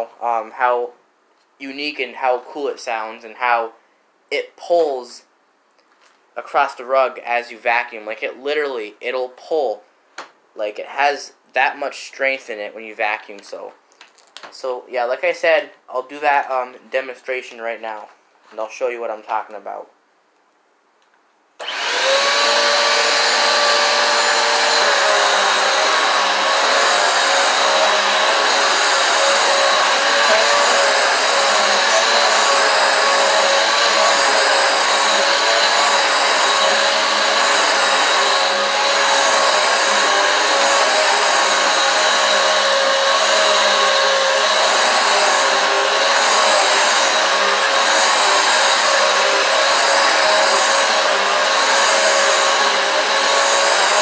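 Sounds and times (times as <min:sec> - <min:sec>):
vacuum cleaner motor whining: 0:21.6 - 0:54.0.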